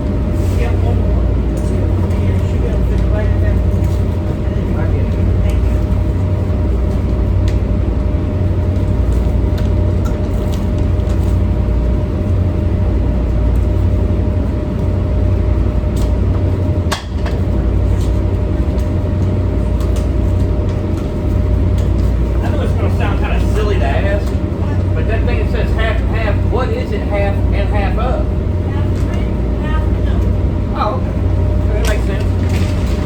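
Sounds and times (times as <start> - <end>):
boat diesel engines rumbling: 0.0 - 33.0.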